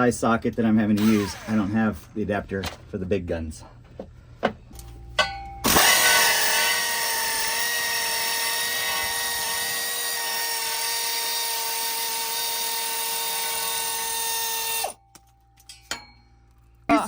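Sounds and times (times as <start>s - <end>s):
impact gun whining and rattling: 5.6s - 11.2s.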